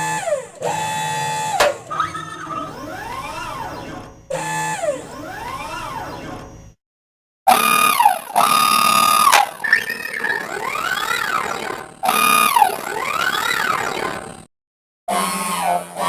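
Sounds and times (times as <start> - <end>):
electronic rising and falling sweeps: 7.5 - 14.4
held electronic tones: 7.5 - 14.5.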